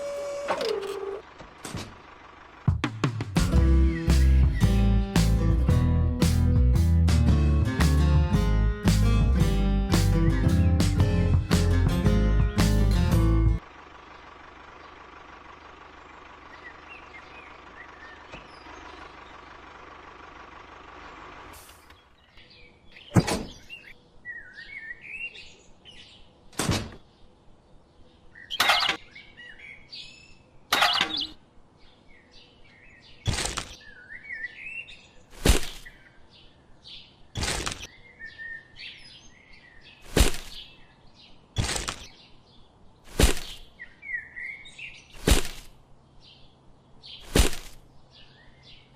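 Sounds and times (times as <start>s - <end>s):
small birds chirping: 3.6s - 5.4s, 14.0s - 20.1s, 21.5s - 48.9s.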